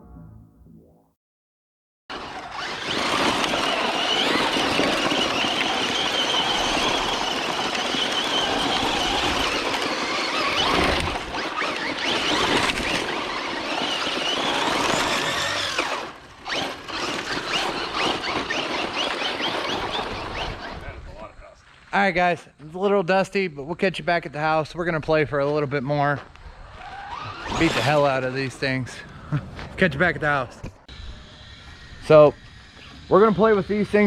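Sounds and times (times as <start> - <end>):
rc truck electric motors whining: 2.1 - 21.2, 26.3 - 28.9, 30.8 - 34.0.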